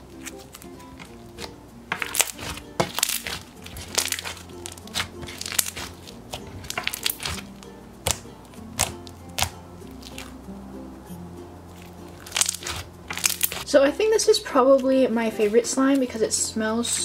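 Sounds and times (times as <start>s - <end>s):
slime beads popping and crackling: 1.9s - 7.4s, 12.2s - 13.6s.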